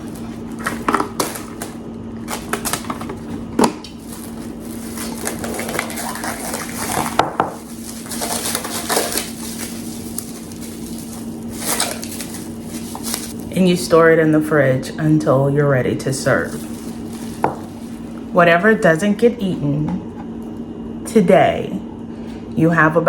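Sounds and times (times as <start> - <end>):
plastic wrap crinkling: 0.0 - 13.7, 16.0 - 18.3.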